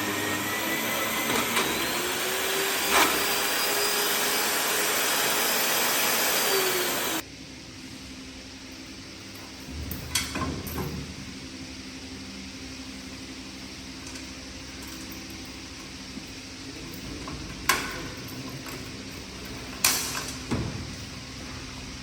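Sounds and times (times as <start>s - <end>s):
cutting machine hissing: 0.0s - 7.2s.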